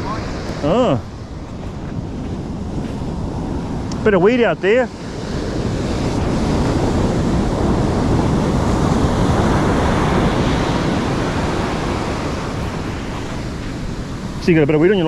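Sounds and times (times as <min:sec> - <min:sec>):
wind on microphone: 0:05.2 - 0:15.0
ocean surf breaking: 0:08.7 - 0:15.0.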